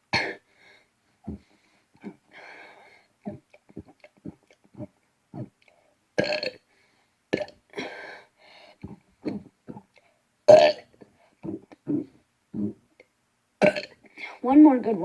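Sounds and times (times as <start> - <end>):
man burping: 6.2 - 6.6, 7.4 - 7.6, 8.9 - 12.8, 13.6 - 14.0.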